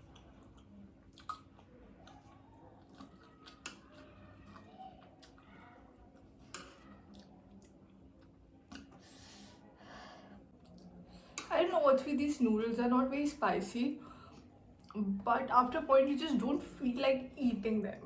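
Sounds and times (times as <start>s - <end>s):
person chewing noodles: 0.0s - 9.5s, 10.6s - 11.0s
wet mouth clicks: 0.1s - 2.2s, 8.7s - 9.0s.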